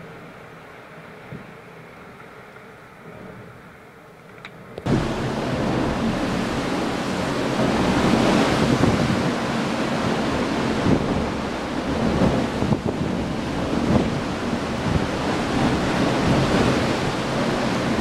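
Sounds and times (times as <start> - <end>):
high seas rushing: 0.0 - 18.0
gale wind buffeting microphone: 4.8 - 18.0.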